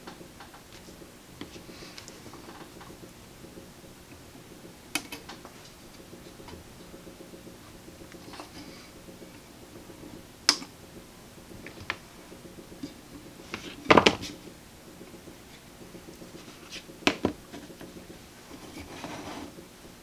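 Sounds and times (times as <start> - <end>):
faint steady hum: 0.0 - 20.0
hand tools clicking and tapping: 0.0 - 20.0.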